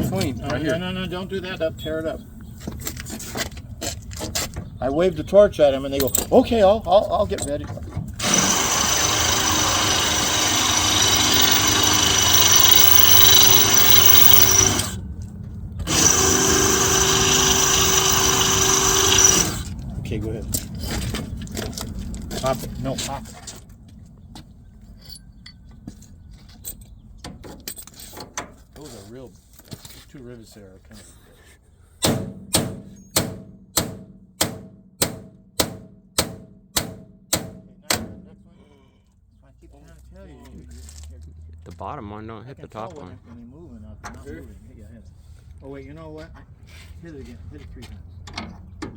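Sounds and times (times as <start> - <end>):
power drill whining: 8.2 - 15.0, 15.8 - 19.7.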